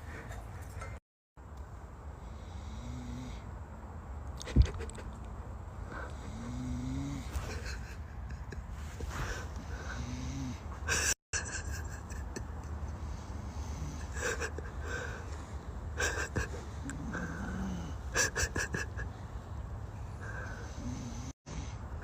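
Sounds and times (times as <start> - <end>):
man snoring: 2.2 - 3.5, 6.0 - 7.4, 9.5 - 11.1, 13.0 - 15.2, 16.0 - 18.2, 20.2 - 21.8.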